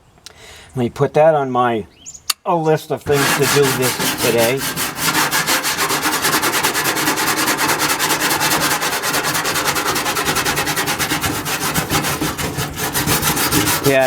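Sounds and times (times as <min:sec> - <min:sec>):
wire brush rasping on metal: 0:03.0 - 0:14.0.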